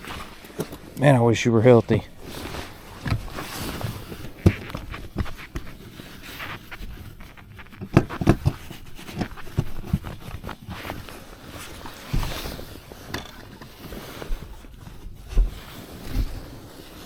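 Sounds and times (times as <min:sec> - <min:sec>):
steady background hiss: 0:00.0 - 0:05.7.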